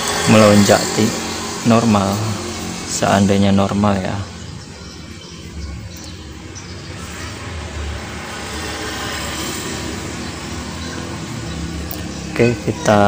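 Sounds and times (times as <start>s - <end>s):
road traffic passing: 0.0s - 13.0s.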